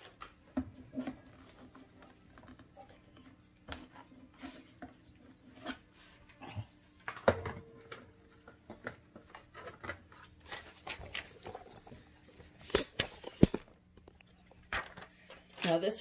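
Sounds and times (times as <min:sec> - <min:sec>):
plastic parts clicking and knocking: 0:12.6 - 0:15.7.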